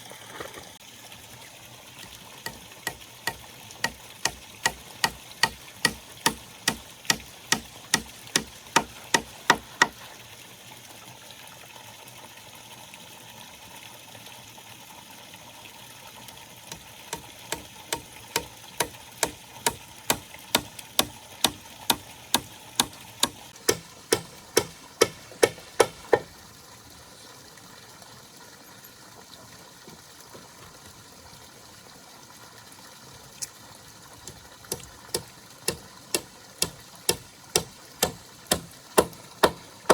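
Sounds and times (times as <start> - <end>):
hand tool striking blows: 2.5 - 10.1, 16.7 - 26.3, 34.7 - 39.9.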